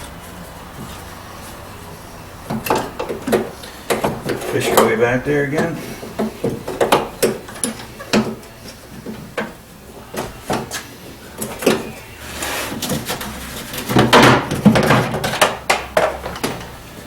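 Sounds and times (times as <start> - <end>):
knocks and scrapes inside door: 12.4 - 15.6.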